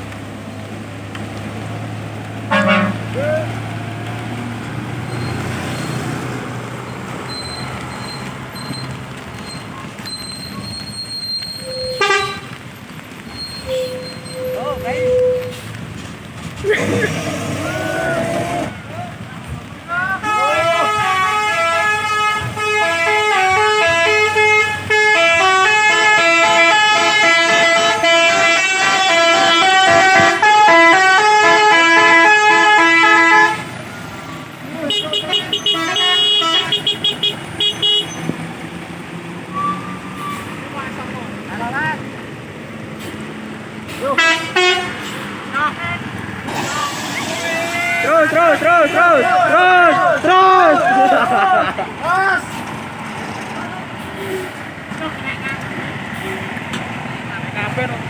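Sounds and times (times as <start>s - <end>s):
bus engine humming: 0.0s - 58.0s
road noise: 0.0s - 58.0s
horn blasts: 2.5s - 3.2s, 11.6s - 12.6s, 20.2s - 33.7s, 34.8s - 38.3s, 44.1s - 45.1s.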